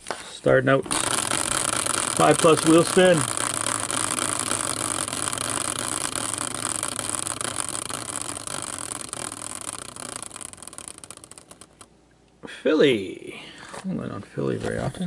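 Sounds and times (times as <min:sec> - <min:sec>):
prize wheel clicking: 0:00.9 - 0:11.9.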